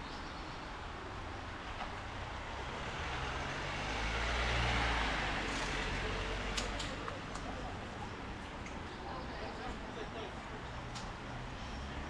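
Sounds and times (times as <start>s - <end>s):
vehicle passing on wet street: 2.4s - 6.9s.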